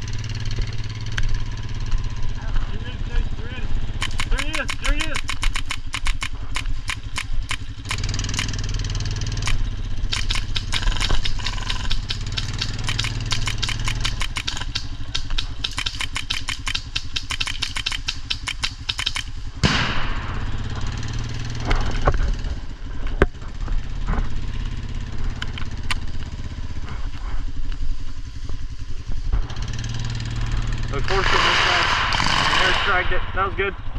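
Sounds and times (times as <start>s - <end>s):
vehicle engine running: 0.0s - 33.9s
airsoft gun firing clicks: 4.0s - 8.6s, 9.4s - 20.2s, 31.1s - 33.0s.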